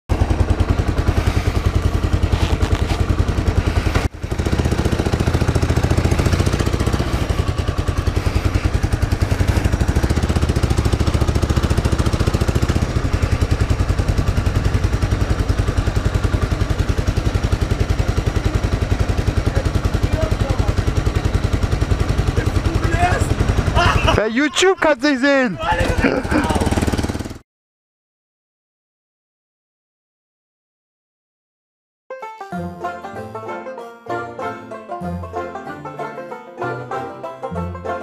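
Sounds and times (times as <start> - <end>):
vehicle engine running: 0.1 - 27.4.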